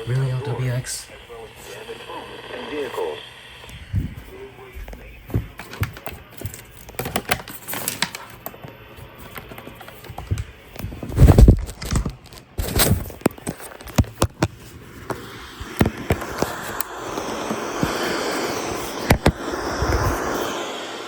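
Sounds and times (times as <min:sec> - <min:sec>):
steady hiss: 0:00.0 - 0:05.9, 0:14.7 - 0:21.0.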